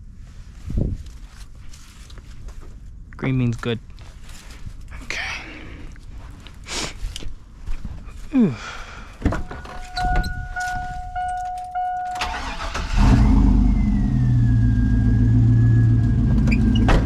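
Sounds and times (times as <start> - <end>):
car warning chime beeping: 9.3 - 13.0
car engine idling: 9.3 - 16.9
car engine starter cranking: 9.4 - 14.5.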